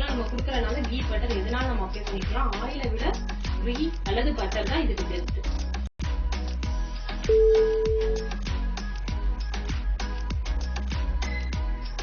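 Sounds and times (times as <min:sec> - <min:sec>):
music with a steady beat: 0:00.0 - 0:12.0
loud electronic tone: 0:07.3 - 0:08.3.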